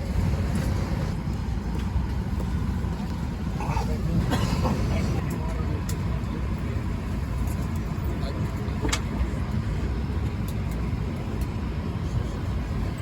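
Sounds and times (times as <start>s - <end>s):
aircraft cabin ventilation hum: 0.0s - 13.0s.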